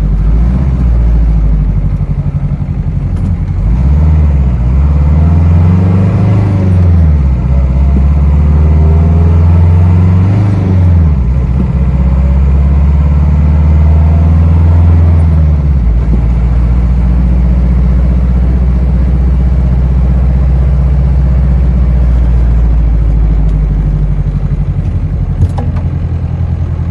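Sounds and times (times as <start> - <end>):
car engine revving: 0.0 - 26.9.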